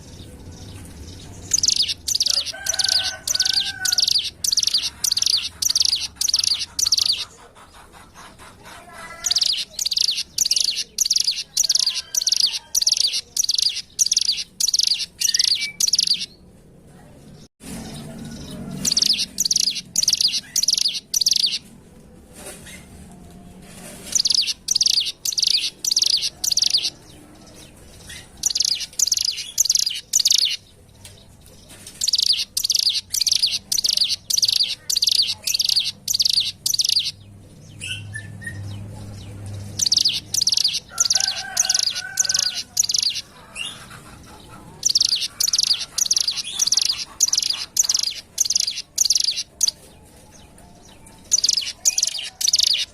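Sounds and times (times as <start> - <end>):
bird singing rapid high notes: 0.0 - 7.2, 9.2 - 16.4, 18.8 - 21.6, 24.1 - 27.0, 28.1 - 30.7, 32.0 - 38.8, 39.7 - 43.3, 44.8 - 49.8.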